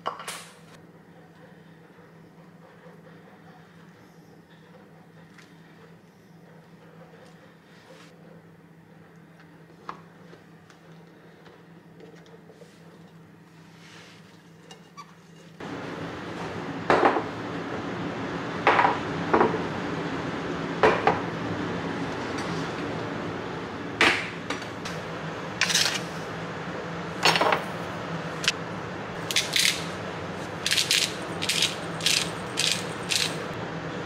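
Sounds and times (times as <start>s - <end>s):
steady low hum: 15.5s - 34.0s.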